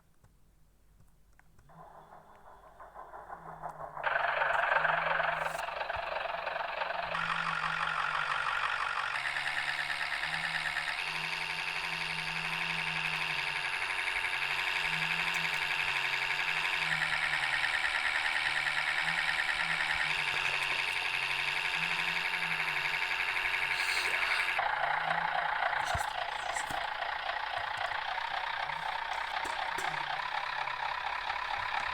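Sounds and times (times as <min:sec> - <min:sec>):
bus diesel engine drone: 0:01.7 - 0:31.9
whine changing pitch: 0:18.2 - 0:28.0.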